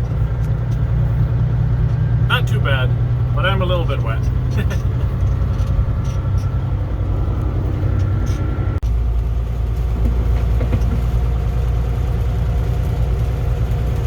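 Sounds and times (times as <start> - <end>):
engine and road drone: 0.0 - 14.0.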